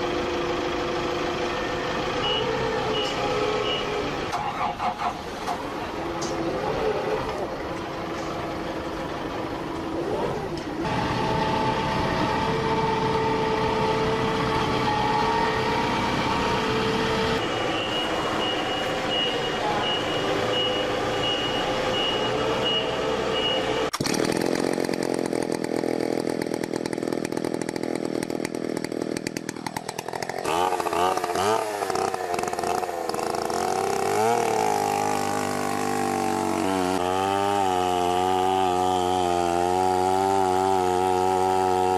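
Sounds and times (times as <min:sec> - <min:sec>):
chainsaw engine revving: 0:10.8 - 0:41.9.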